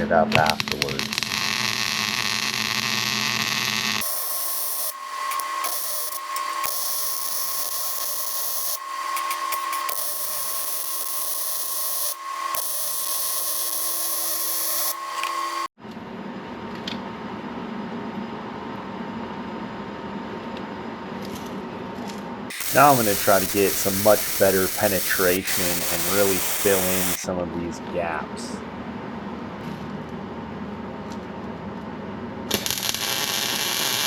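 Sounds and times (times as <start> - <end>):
arc welding crackling hiss: 0.3 - 15.7, 22.5 - 27.2, 32.5 - 34.0.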